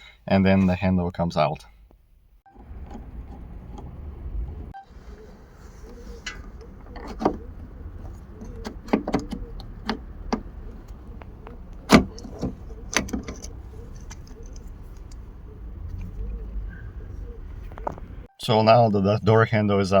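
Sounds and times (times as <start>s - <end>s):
metal and plastic clicks: 5.9s - 15.3s.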